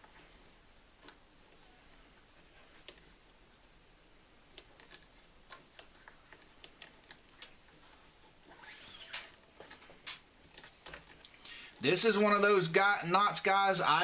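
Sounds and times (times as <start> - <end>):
cord clicks and rustles: 4.5 - 11.7.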